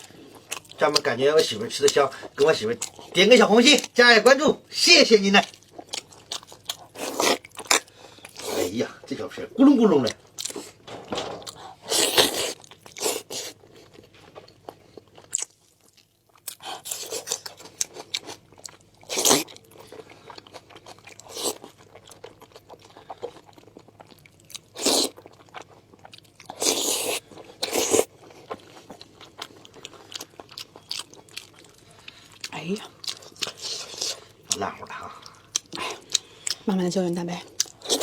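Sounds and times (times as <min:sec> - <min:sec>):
chewing and biting meat: 0:05.4 - 0:08.6, 0:14.7 - 0:36.6.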